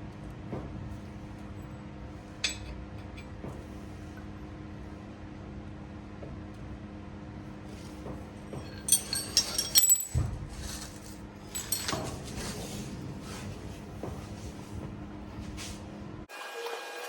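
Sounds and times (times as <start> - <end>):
metal tools clinking: 8.4 - 12.8.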